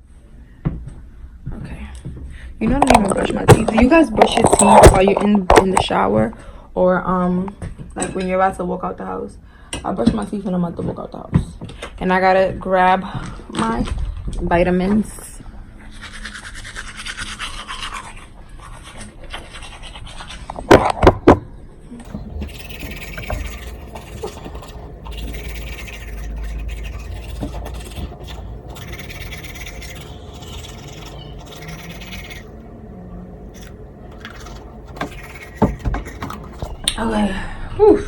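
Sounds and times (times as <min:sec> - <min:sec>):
toothbrush scrubbing teeth: 0:15.9 - 0:20.6, 0:22.0 - 0:37.0.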